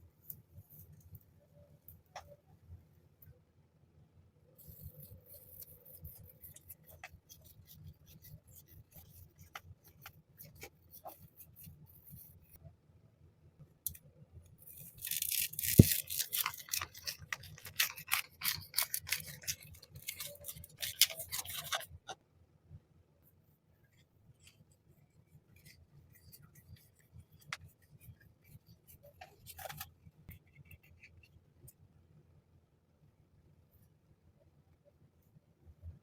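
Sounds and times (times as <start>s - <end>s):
packaging crinkling and snipping: 14.8s - 21.9s.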